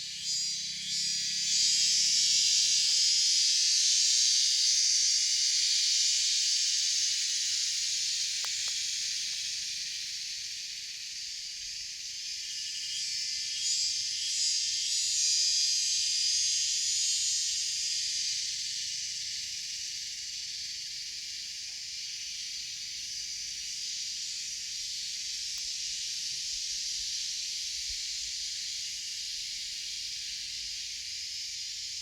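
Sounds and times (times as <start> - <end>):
insect chorus drone: 0.0 - 32.0.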